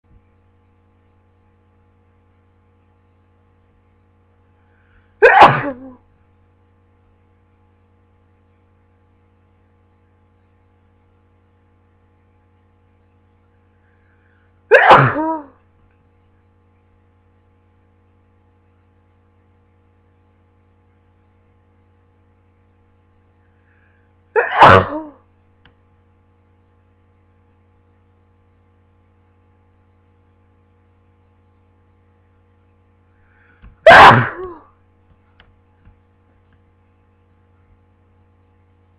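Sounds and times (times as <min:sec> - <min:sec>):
person sneezing: 0:05.2 - 0:06.0, 0:14.7 - 0:15.6, 0:24.4 - 0:25.2, 0:33.6 - 0:34.7.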